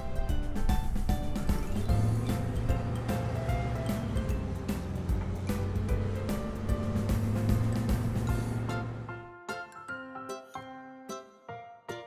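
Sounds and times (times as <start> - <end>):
light chime-like melody: 0.0 - 5.0.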